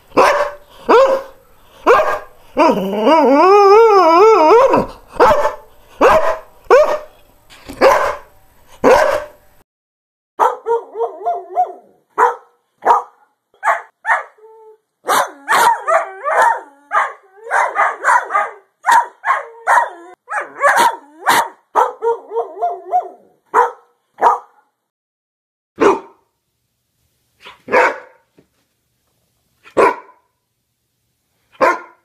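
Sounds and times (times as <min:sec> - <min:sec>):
dog barking: 0:00.1 - 0:02.3, 0:04.7 - 0:07.1, 0:07.8 - 0:09.4, 0:10.4 - 0:14.4, 0:15.0 - 0:24.7, 0:25.8 - 0:26.2, 0:27.4 - 0:28.2, 0:29.7 - 0:30.3, 0:31.6 - 0:32.0.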